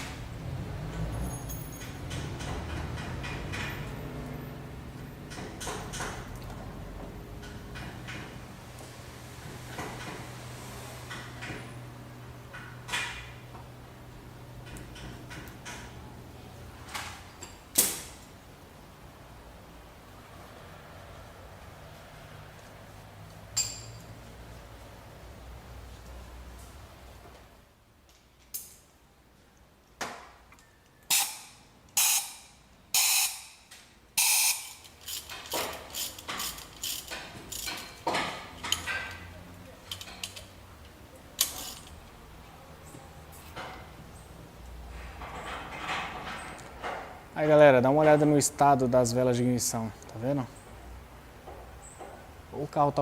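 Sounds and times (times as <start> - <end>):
tools clacking and clinking: 0.9 - 4.0, 23.5 - 24.2, 34.6 - 42.0, 45.0 - 48.4.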